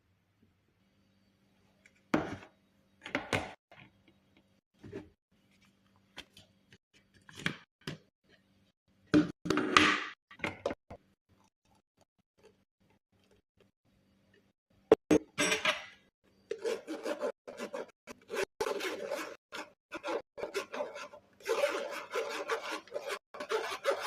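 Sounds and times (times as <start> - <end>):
kitchenware knocking and clattering: 14.9 - 16.0.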